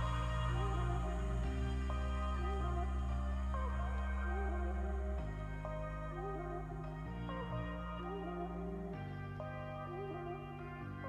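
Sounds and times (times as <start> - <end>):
slow ambient synth music: 0.0 - 11.0.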